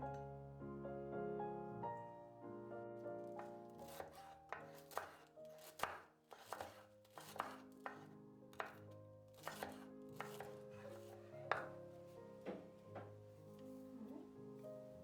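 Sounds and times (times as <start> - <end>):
soft background music: 0.0 - 15.0
knife chopping on cutting board: 3.8 - 8.8, 9.4 - 11.7.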